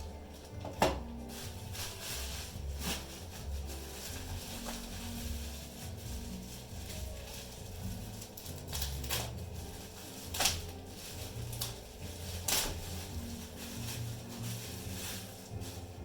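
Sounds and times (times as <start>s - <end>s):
packaging crackling: 0.0s - 16.0s.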